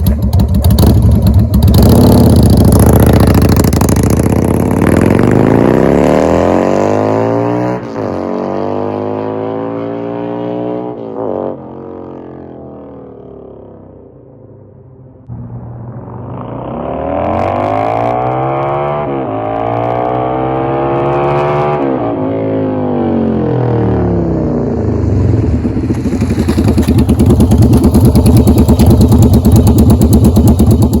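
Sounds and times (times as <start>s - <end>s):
motorcycle engine revving: 0.0s - 14.0s, 15.3s - 31.0s
choppy exhaust note: 15.3s - 18.7s.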